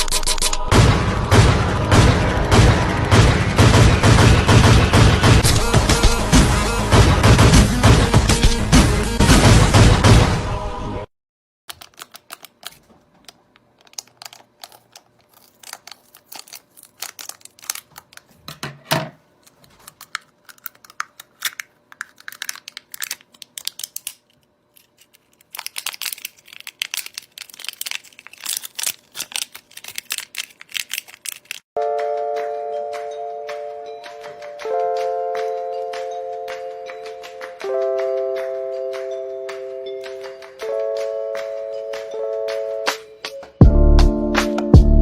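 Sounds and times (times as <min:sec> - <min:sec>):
plastic fidget toys clicking and popping: 0:11.7 - 0:18.3, 0:25.4 - 0:31.6.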